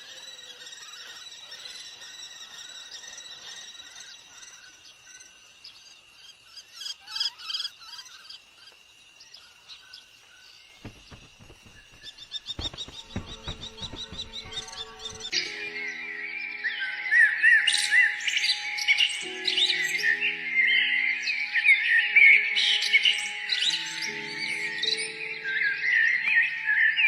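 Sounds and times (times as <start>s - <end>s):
birds calling and chirping: 0.0s - 27.0s
sharp knocks: 10.8s - 15.4s.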